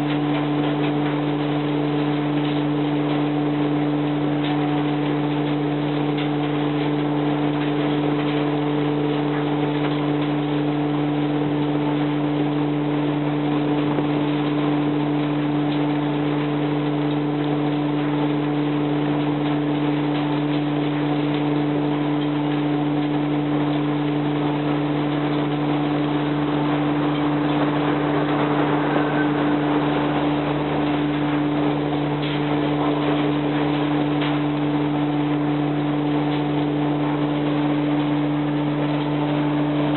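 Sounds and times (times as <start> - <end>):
machine drone: 22.2 - 39.9
constant noisy rush: 22.4 - 39.9.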